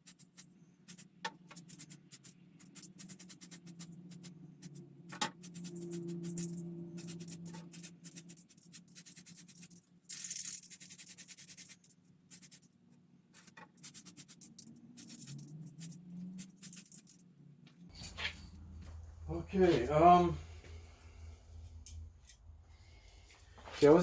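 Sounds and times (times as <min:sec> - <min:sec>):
small parts clicking: 0:00.0 - 0:12.8, 0:13.4 - 0:17.2.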